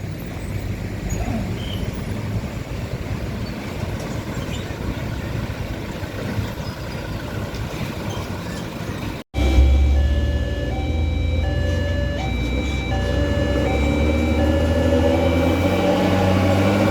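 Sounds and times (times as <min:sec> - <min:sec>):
heavy trucks rumbling past: 0:00.0 - 0:16.9
steady engine drone: 0:07.0 - 0:16.9
held tones: 0:09.4 - 0:16.2.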